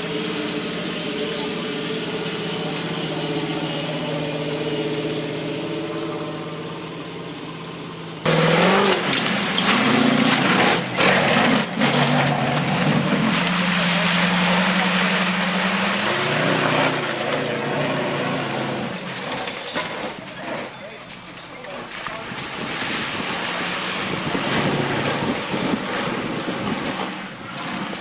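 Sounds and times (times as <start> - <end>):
engine idling: 0.0 - 22.4
engine working under load: 0.0 - 28.0.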